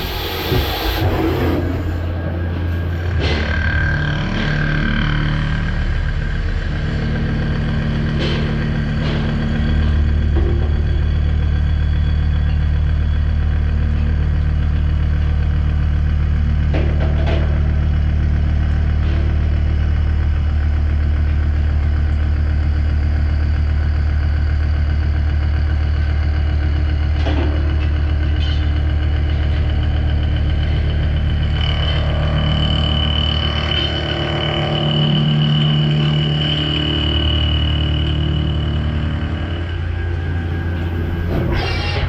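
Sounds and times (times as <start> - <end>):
low machine hum: 0.0 - 42.0
steady high-pitched tone: 31.2 - 42.0.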